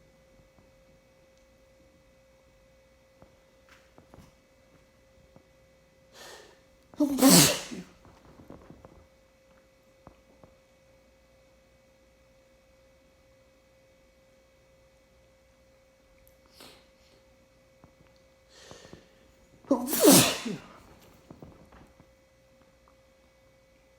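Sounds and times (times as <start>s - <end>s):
person sneezing: 6.2s - 8.0s, 19.7s - 20.9s.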